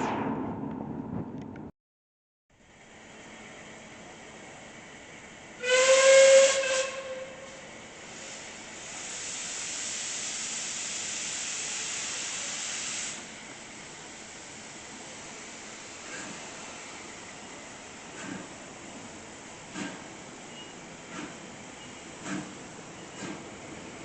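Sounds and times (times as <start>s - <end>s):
steam locomotive whistle: 5.6s - 7.7s
steam hissing: 8.0s - 13.4s.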